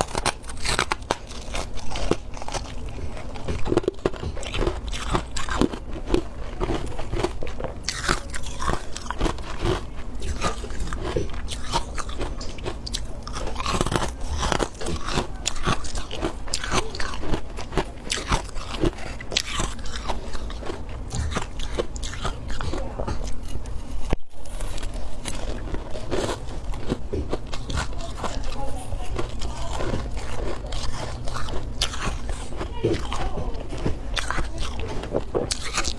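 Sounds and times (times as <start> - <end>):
biting and chewing frost: 0.0 - 35.9.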